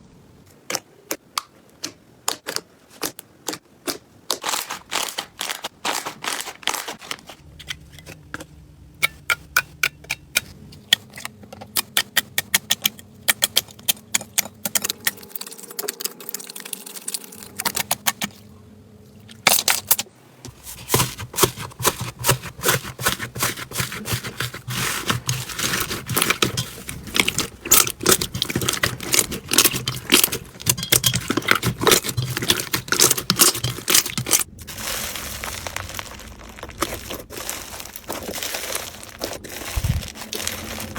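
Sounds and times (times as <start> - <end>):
slime clicking and crackling: 0.7 - 7.3, 20.8 - 40.9.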